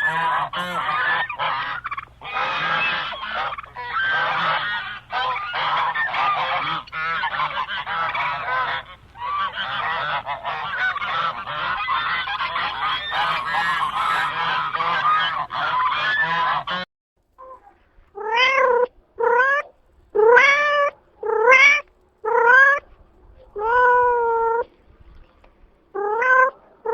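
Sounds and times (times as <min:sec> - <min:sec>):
geese honking: 0:00.0 - 0:17.8, 0:18.5 - 0:24.8
cat meowing: 0:18.2 - 0:22.8, 0:26.0 - 0:26.9.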